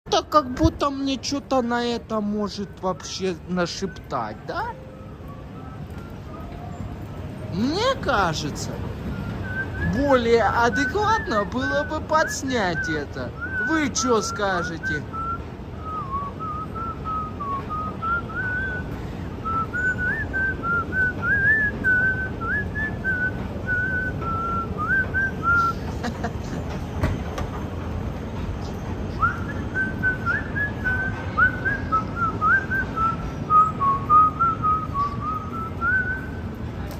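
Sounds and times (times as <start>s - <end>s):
person whistling a tune: 2.9s - 6.9s, 9.0s - 26.3s, 28.7s - 36.5s.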